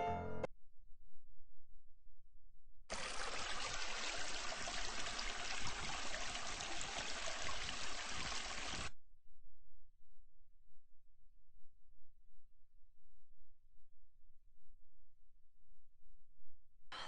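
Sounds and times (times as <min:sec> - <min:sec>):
water running: 0:02.9 - 0:08.9.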